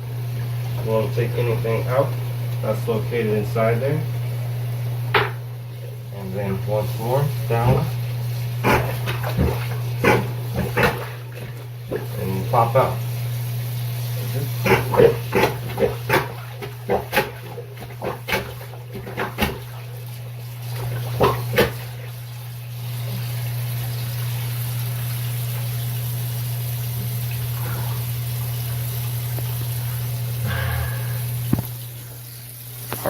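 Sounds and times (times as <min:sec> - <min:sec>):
sink plunger sucking and gurgling: 0:00.0 - 0:33.0
water draining: 0:04.8 - 0:33.0
low hum: 0:29.7 - 0:32.4.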